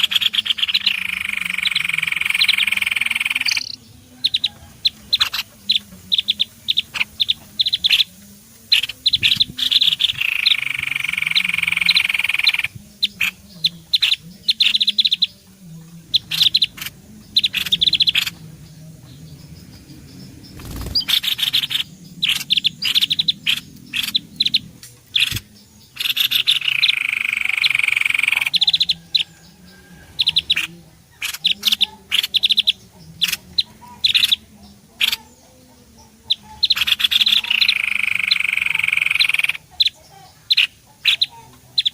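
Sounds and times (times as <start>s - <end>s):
buzzy churring bird call: 0.0s - 3.8s, 8.8s - 15.2s, 20.4s - 25.4s, 36.3s - 39.9s
songbird chipping calls: 0.0s - 41.9s.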